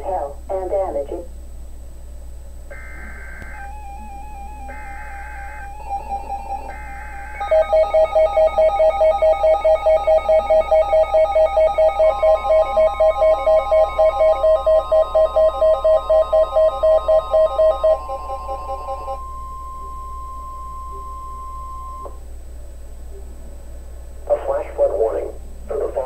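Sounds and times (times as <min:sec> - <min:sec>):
warbling data burst: 0:02.7 - 0:22.1
pulsing electronic alarm tone: 0:02.7 - 0:22.2
steady higher tone: 0:02.7 - 0:22.2.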